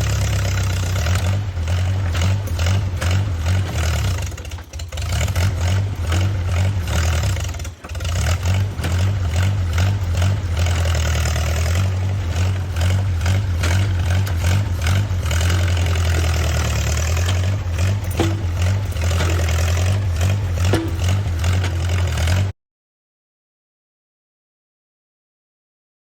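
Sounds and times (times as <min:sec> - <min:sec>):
bulldozer engine running: 0:00.0 - 0:22.5
metallic clanks and knocks: 0:02.1 - 0:06.2, 0:13.2 - 0:22.5.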